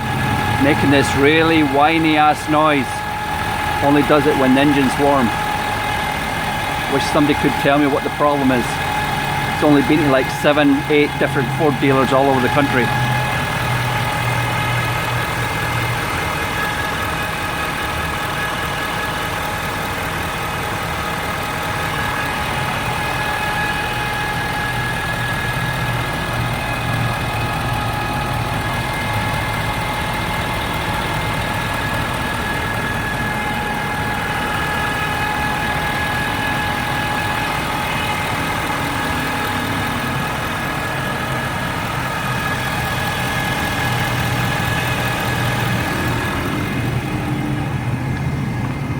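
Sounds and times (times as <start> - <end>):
high-pitched whine: 0.0 - 19.3
diesel engine idling: 0.0 - 48.9.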